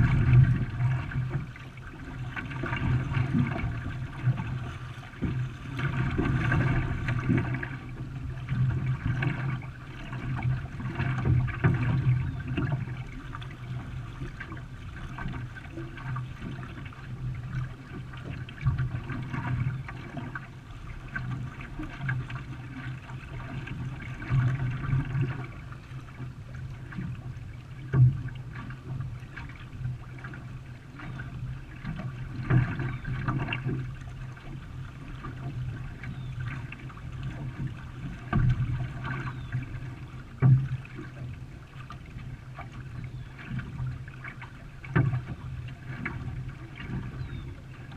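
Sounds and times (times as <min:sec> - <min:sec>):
steady low rumble: 0:00.0 - 0:15.7
paddle strokes splashing in water: 0:00.0 - 0:47.9.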